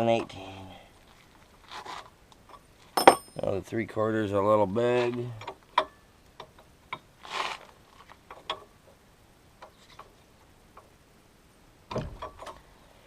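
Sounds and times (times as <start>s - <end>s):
short rustle: 1.0s - 2.2s
metallic clinks of wrenches: 3.0s - 3.5s.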